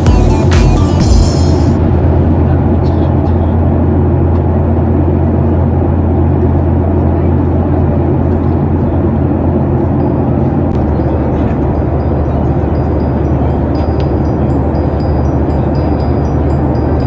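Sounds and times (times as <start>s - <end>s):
jet airliner cabin drone: 0.0s - 17.0s.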